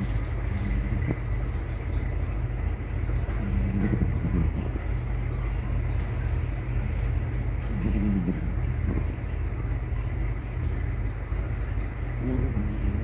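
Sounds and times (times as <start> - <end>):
dog snoring: 0.0 - 1.6, 3.2 - 5.1, 6.8 - 9.4, 12.2 - 13.0.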